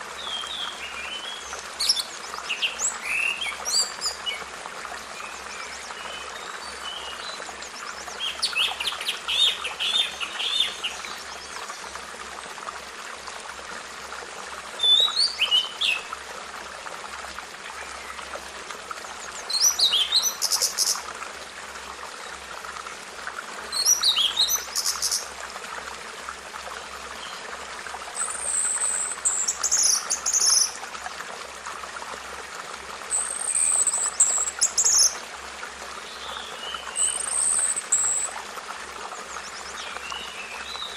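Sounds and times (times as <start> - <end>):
songbird singing: 5.2 - 11.7, 19.3 - 21.0, 23.7 - 25.3, 28.2 - 30.8, 36.1 - 38.3.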